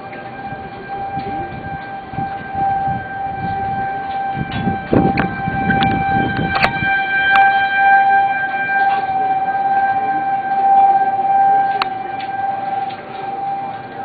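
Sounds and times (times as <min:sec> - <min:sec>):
low rumble on microphone: 0:00.0 - 0:07.1
tornado warning siren steady tone: 0:00.0 - 0:14.0.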